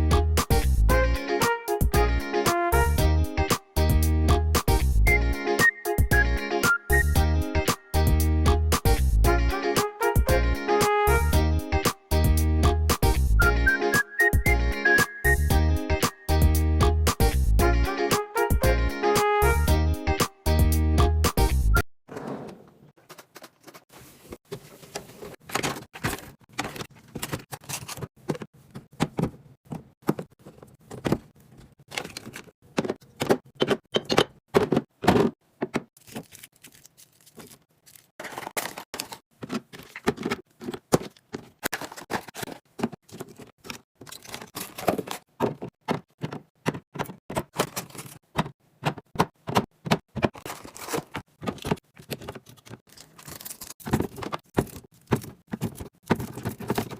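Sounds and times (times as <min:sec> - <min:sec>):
snacks and drinks being handled: 0:23.0 - 0:33.6, 0:34.6 - 0:48.5, 0:50.1 - 0:56.9.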